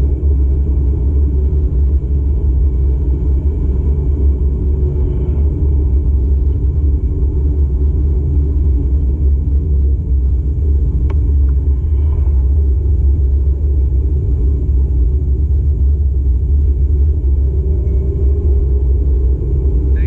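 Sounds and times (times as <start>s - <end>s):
car engine and road noise: 8.8s - 14.2s.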